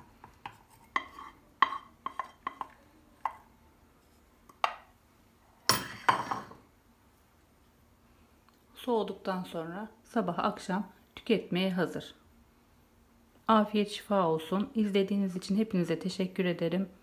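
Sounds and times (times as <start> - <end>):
spoon knocking and scraping pan: 0.0 - 3.5, 5.7 - 6.6
kitchenware clatter: 5.6 - 6.6.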